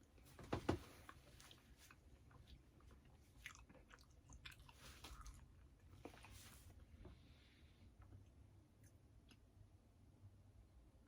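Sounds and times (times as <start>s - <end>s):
person chewing food: 1.0s - 6.5s.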